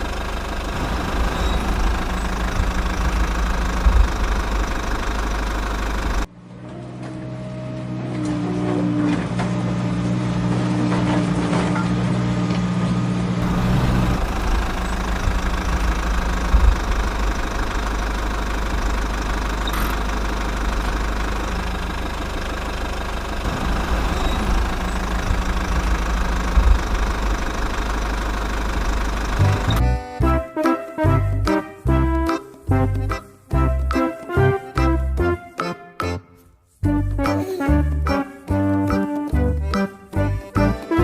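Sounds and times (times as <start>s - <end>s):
engine idling with knocking: 0.0s - 6.3s, 13.4s - 30.4s, 36.8s - 41.0s.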